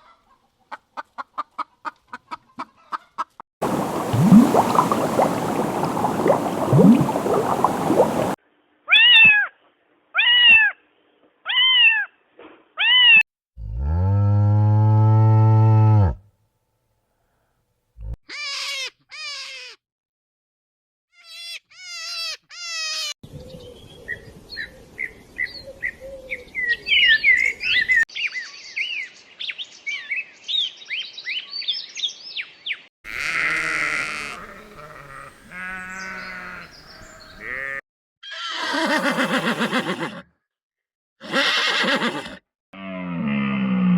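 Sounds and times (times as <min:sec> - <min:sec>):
bleat: 0:18.3 - 0:19.8, 0:33.1 - 0:40.2, 0:41.2 - 0:43.9.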